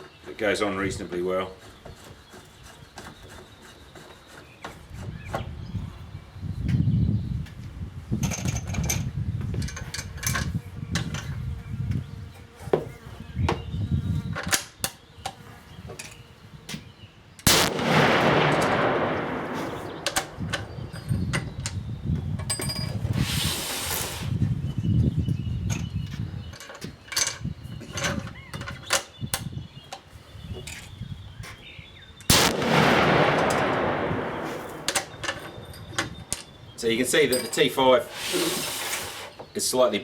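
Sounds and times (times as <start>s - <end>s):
rifle shot: 17.5s - 21.0s, 32.3s - 35.6s
rifle handling clicks and knocks: 19.5s - 21.8s, 34.5s - 36.5s.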